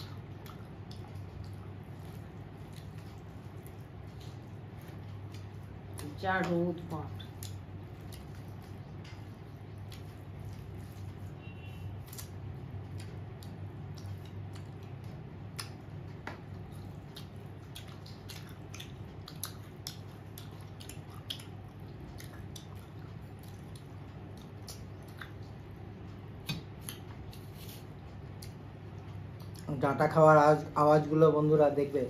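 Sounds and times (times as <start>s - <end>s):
steady low hum: 0.0s - 32.0s
person chewing and sucking: 7.2s - 25.6s.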